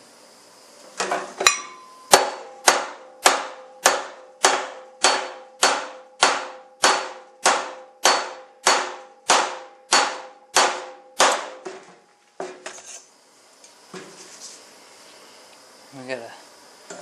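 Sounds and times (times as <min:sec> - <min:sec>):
hammer striking metal: 0:01.4 - 0:11.7.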